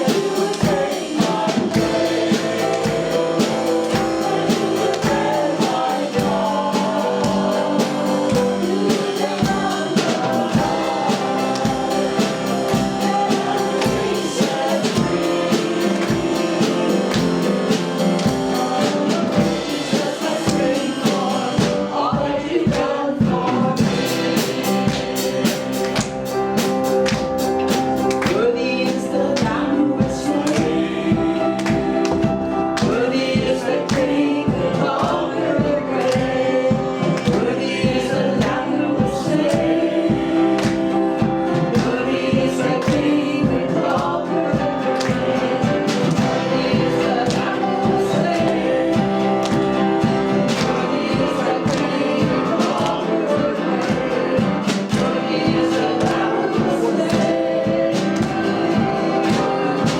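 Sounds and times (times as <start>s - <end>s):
people singing: 0.0s - 59.9s
steady drum beat: 0.0s - 59.9s
worship band playing: 0.0s - 59.9s.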